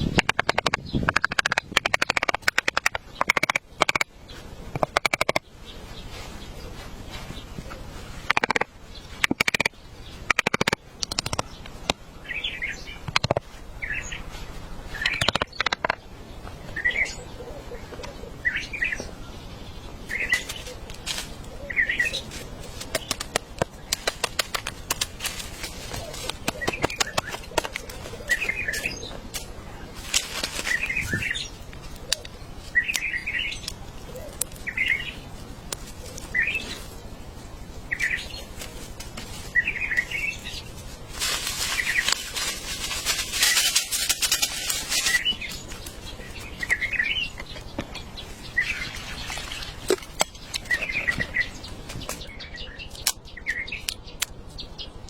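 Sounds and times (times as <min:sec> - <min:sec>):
bird chirping: 0:00.0 - 0:06.8, 0:07.4 - 0:29.9, 0:44.6 - 0:55.0.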